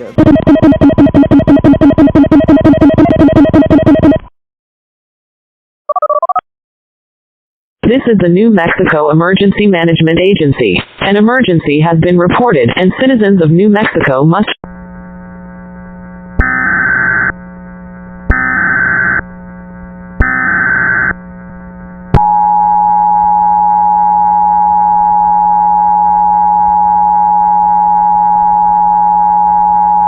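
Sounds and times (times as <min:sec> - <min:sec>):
warbling digital data tones: 0:00.0 - 0:04.2
two-tone attention signal: 0:00.0 - 0:04.3
faint steady hum: 0:14.6 - 0:30.0.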